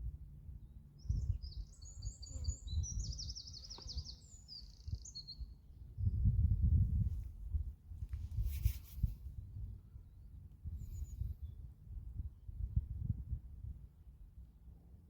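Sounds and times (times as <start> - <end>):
songbird singing: 0.4 - 6.4.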